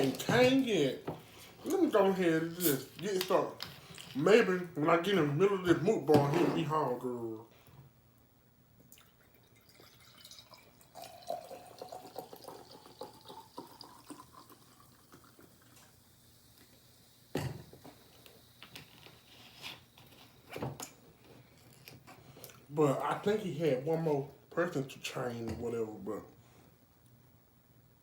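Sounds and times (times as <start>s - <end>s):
liquid pouring into container: 8.9s - 16.4s.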